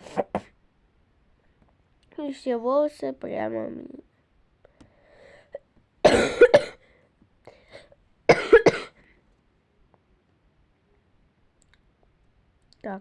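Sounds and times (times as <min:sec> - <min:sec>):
girl coughing: 0:06.0 - 0:06.8, 0:08.3 - 0:09.0.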